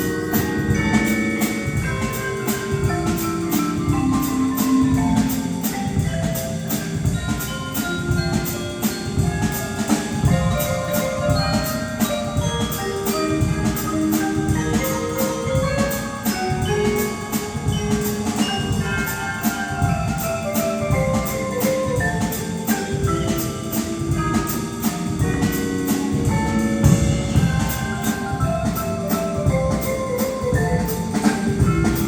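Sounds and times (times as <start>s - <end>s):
band playing held notes: 0.0s - 32.0s
percussion beat: 0.0s - 32.0s.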